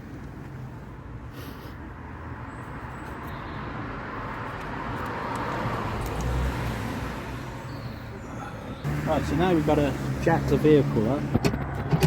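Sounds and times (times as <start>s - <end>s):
road vehicle passing by: 4.0s - 12.0s.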